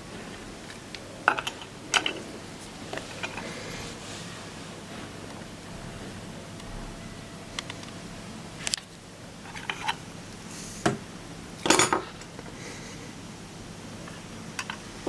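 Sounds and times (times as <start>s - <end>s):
faint steady hum: 0.0s - 15.0s
metal tools clinking on workbench: 11.6s - 12.0s.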